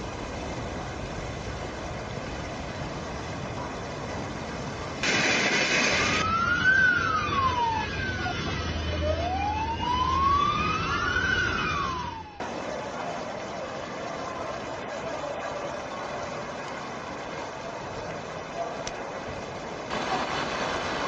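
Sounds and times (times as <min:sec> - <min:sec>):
steady rushing noise: 0:00.0 - 0:09.0
siren wailing: 0:05.8 - 0:12.4.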